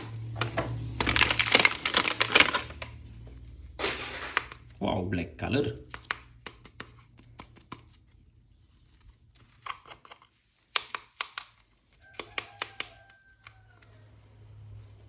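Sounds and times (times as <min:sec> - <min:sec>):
plastic toy packaging handled: 0:00.0 - 0:03.0, 0:06.9 - 0:14.0.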